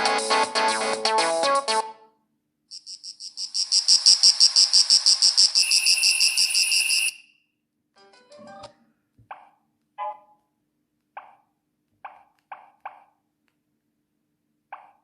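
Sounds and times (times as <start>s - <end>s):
high-pitched pulsing beeps: 2.7s - 7.3s.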